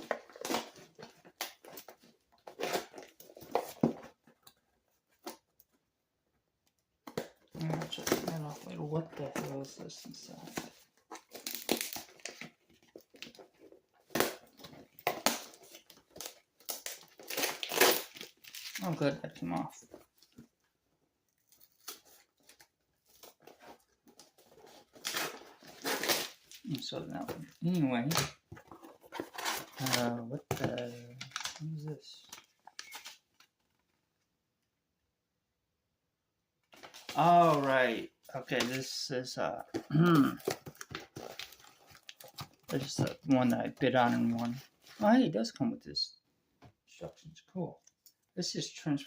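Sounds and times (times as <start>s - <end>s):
packaging rustling and tearing: 0.0s - 4.4s, 7.5s - 20.5s, 21.4s - 33.6s, 36.7s - 45.0s.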